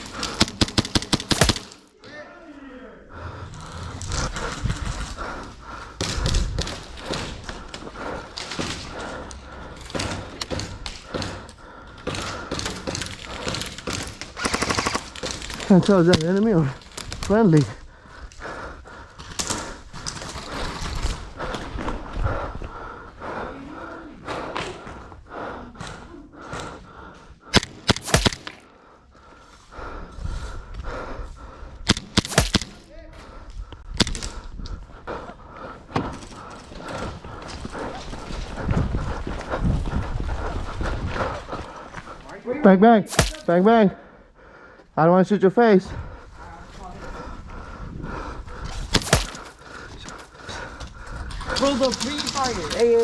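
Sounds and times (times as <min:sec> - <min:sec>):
airsoft gun shots: 0:01.3 - 0:01.8, 0:27.9 - 0:28.6, 0:32.3 - 0:32.8, 0:43.1 - 0:43.6, 0:49.0 - 0:49.5
footsteps: 0:01.3 - 0:01.8, 0:27.9 - 0:28.6, 0:32.3 - 0:32.8, 0:43.1 - 0:43.6, 0:49.0 - 0:49.6
sharp taps: 0:01.3 - 0:01.8
thuds: 0:01.3 - 0:01.8, 0:27.9 - 0:28.6, 0:32.3 - 0:32.8, 0:43.1 - 0:43.6, 0:49.0 - 0:49.6.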